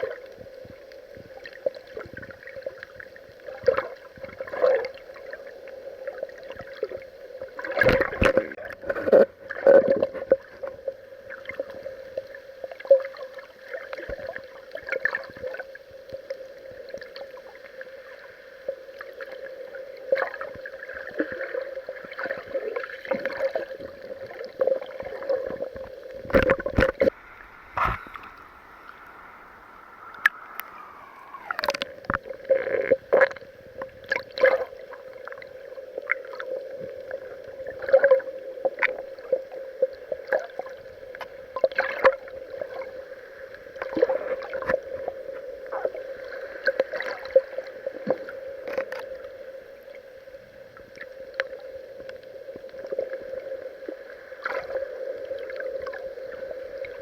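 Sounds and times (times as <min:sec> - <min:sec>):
water sloshing and gurgling: 0:00.0 - 0:57.0
steady hum: 0:22.3 - 0:57.0
falling tone: 0:27.1 - 0:32.0.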